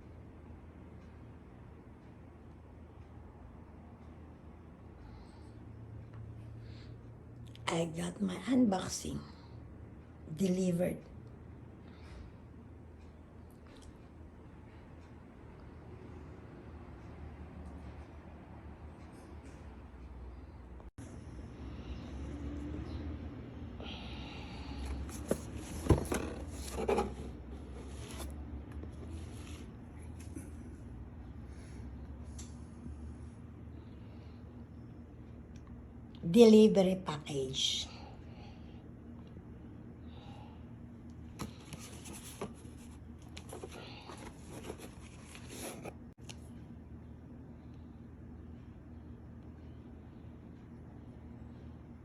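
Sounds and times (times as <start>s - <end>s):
steady low hum: 0.0s - 52.0s
package scraping and rustling: 25.1s - 28.3s, 41.4s - 46.0s.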